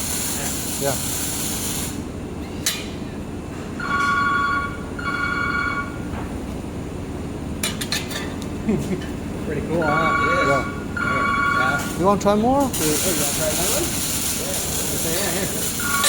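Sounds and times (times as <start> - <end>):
laser welder hissing: 0.0 - 2.1, 11.8 - 16.0
low machine hum: 0.0 - 16.0
multi-tone electronic beeps: 9.8 - 11.8.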